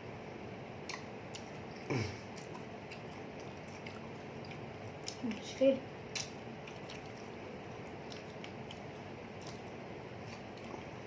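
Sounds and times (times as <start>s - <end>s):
people chewing: 0.8s - 5.4s, 6.1s - 11.0s
wet mouth clicks: 0.9s - 5.2s, 6.1s - 7.3s.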